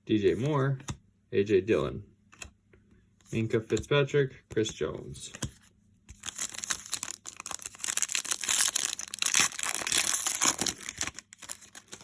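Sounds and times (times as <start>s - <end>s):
foil wrapper crinkling and tearing: 6.2s - 12.0s.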